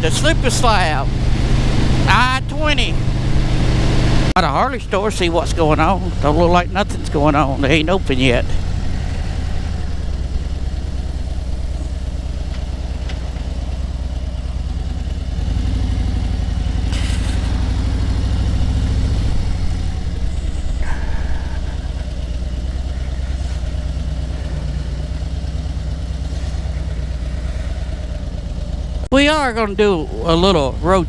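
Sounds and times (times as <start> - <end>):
motorcycle engine running: 0.0 - 31.0.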